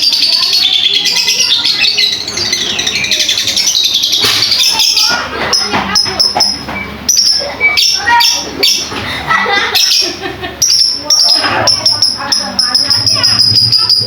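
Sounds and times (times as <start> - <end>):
lovebird chirping and chattering: 0.0 - 14.0.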